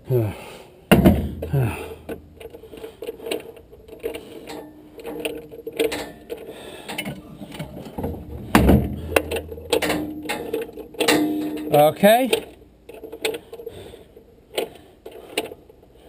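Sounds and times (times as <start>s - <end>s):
faint steady hum: 0.0s - 16.0s
mechanical clicking and rattling: 1.4s - 15.8s
heavy knock: 8.4s - 9.6s.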